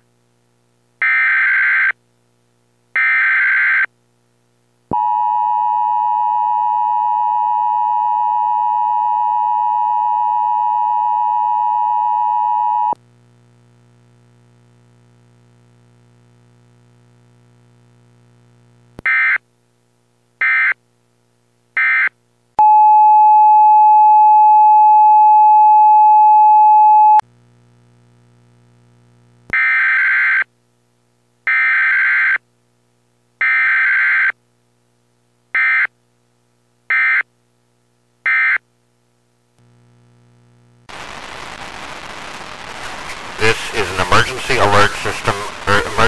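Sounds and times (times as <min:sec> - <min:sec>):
faint low hum: 0:03.9 - 0:29.8, 0:34.3 - 0:40.9.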